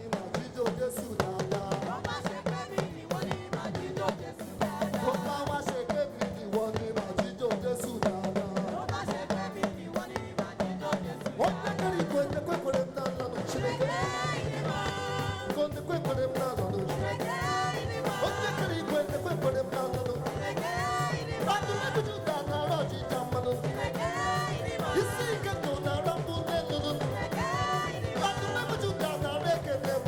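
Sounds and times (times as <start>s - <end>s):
fast busy drum beat: 0.0s - 30.0s
live band playing gospel music: 0.0s - 30.0s
person singing: 0.0s - 30.0s.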